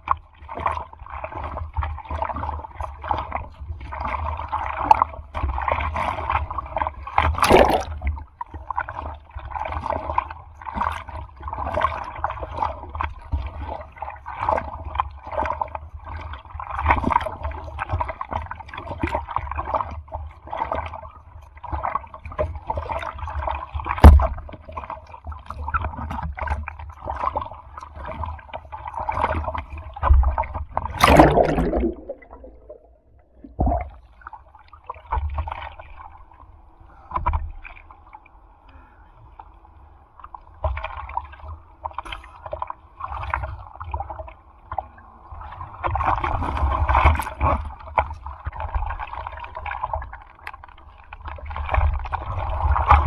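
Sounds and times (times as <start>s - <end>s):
rush of water: 7.4s - 8.0s, 31.0s - 33.5s
sea water splashing in surf: 7.4s - 8.1s, 30.9s - 33.1s.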